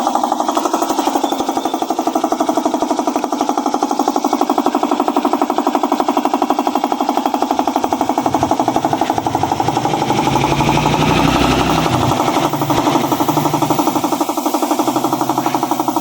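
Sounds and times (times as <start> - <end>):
machine pulsing rattle: 0.0 - 16.0
low rumble: 7.4 - 14.0.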